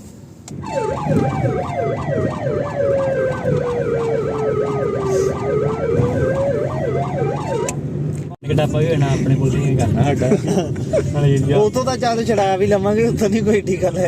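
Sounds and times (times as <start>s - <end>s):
police-style siren yelping: 0.6s - 7.8s.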